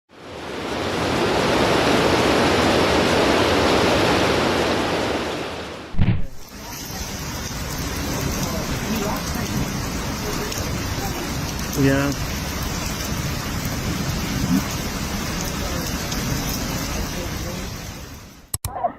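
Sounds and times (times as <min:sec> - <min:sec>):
heavy rushing water: 0:00.1 - 0:18.5
light steady rain: 0:00.1 - 0:18.6
heavy low thump: 0:06.0 - 0:06.4.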